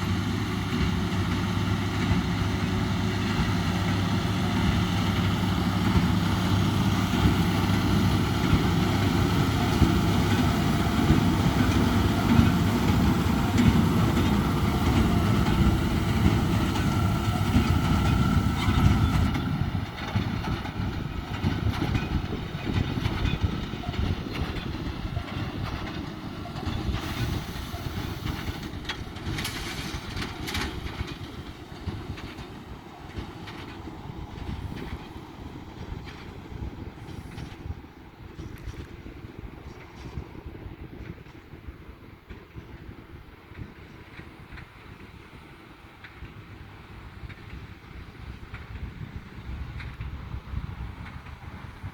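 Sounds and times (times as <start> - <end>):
baler machinery clattering: 0.0 - 37.8
tractor engine drone: 0.0 - 51.9.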